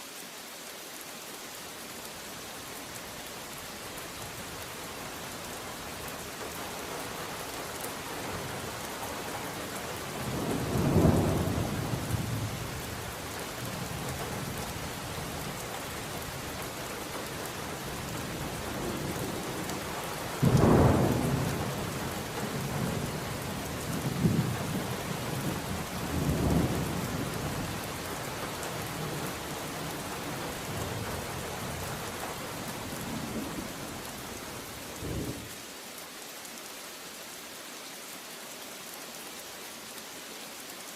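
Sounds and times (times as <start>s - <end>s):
heavy rain: 0.0s - 40.9s
thunder rumbling: 10.2s - 12.9s, 20.3s - 27.8s.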